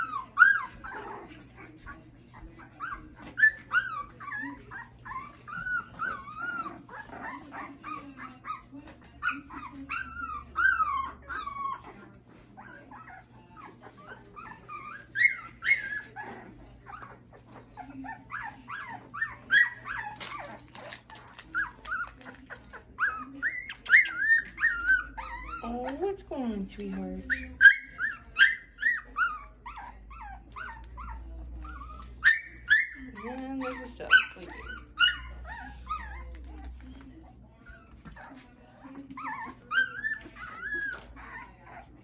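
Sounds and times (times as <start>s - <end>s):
puppies whimpering and squealing: 0.0s - 42.0s
puppy yelps: 9.2s - 12.0s, 14.0s - 16.3s, 18.1s - 20.6s, 23.0s - 25.6s, 27.3s - 36.4s.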